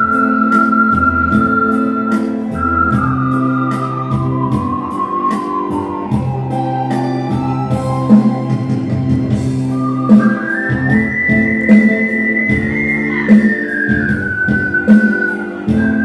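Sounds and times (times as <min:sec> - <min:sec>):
guitar and light beat backing: 0:00.0 - 0:16.0
ocarina melody: 0:00.0 - 0:16.0.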